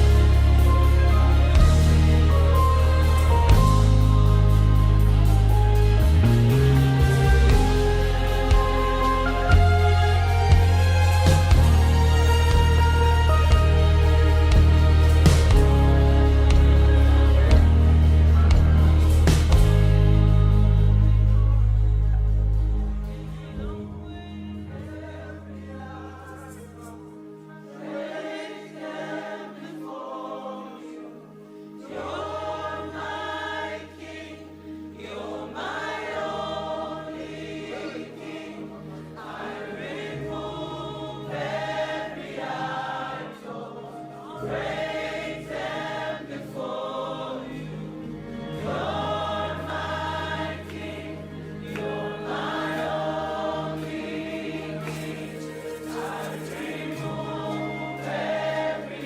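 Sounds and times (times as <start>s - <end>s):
group singing a worship song: 0.0s - 21.3s, 23.0s - 59.0s
sustained low chords: 0.0s - 24.7s.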